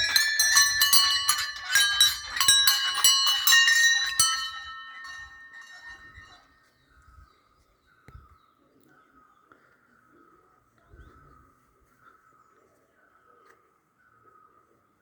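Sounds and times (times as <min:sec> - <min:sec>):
temple bells ringing: 0:00.0 - 0:06.4.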